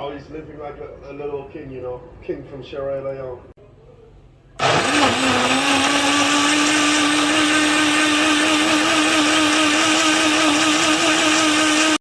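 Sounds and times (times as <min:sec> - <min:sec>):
blender motor whirring: 0:04.6 - 0:12.0.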